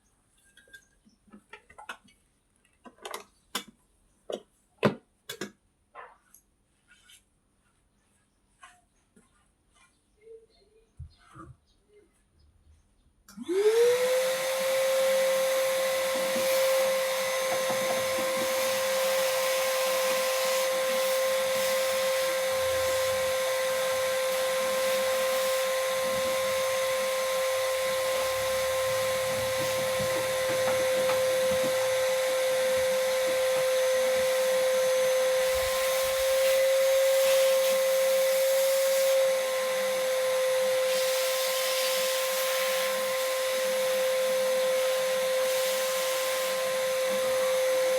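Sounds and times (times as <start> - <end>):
electric motor high whine: 13.5 - 47.9.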